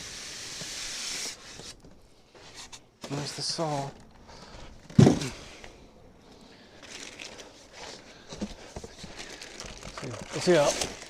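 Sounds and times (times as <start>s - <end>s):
packaging rustling and crinkling: 6.8s - 11.0s.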